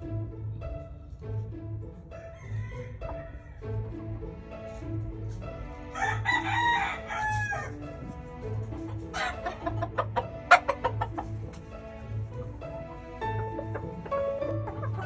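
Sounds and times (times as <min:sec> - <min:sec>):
music with steady beat: 0:00.0 - 0:15.0
rooster crowing: 0:02.2 - 0:03.6, 0:06.0 - 0:07.8.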